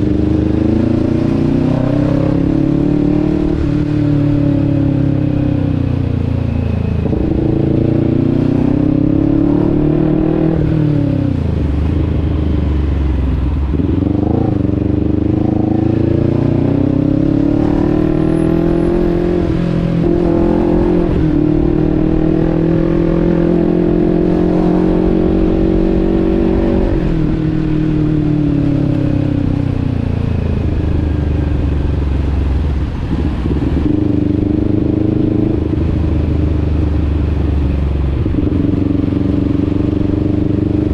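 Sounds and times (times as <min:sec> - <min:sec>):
motorcycle engine accelerating: 0:00.0 - 0:40.9.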